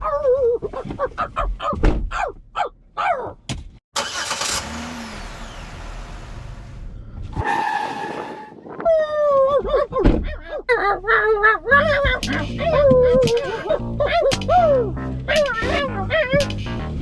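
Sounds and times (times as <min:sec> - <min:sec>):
car engine starting and running: 0:03.9 - 0:08.5.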